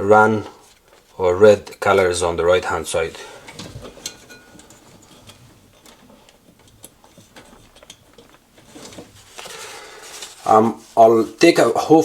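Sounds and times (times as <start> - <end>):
clicks and taps of handling wires: 3.5 - 9.1.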